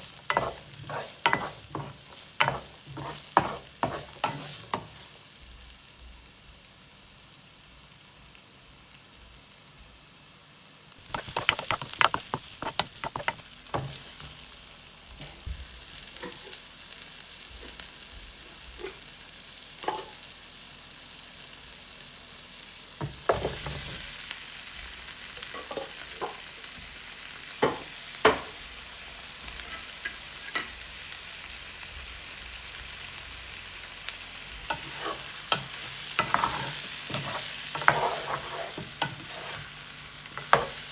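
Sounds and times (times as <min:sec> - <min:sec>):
utensil stirring against pot: 0:00.0 - 0:05.0, 0:11.0 - 0:13.4, 0:34.7 - 0:39.7
food sizzling in a pot: 0:00.0 - 0:40.9.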